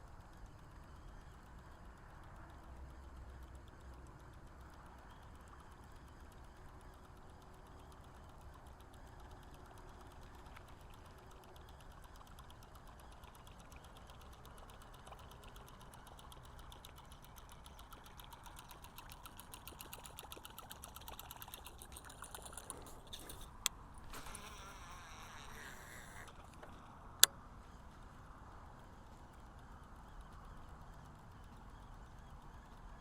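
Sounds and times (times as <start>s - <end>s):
fishing reel ticking: 0.1s - 27.3s
sharp clicks: 3.0s - 27.4s.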